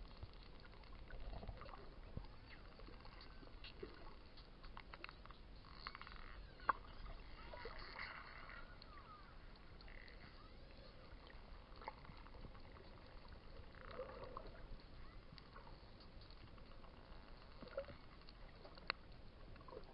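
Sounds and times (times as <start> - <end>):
dolphin clicks: 2.3 - 19.9
dolphin whistles underwater: 6.2 - 11.2.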